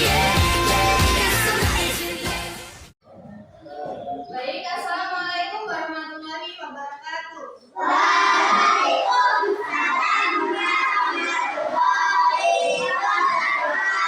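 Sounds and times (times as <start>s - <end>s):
children calling out in unison: 7.7s - 14.0s.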